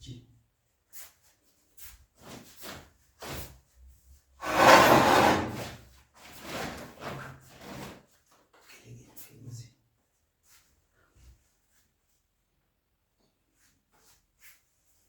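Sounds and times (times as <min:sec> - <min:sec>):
drawer sliding on runners: 0:04.4 - 0:05.8.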